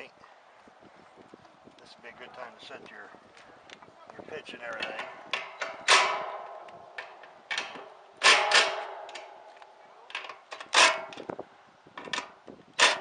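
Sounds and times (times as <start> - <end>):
metallic knocks and clanks: 4.8 - 11.3, 12.0 - 13.0.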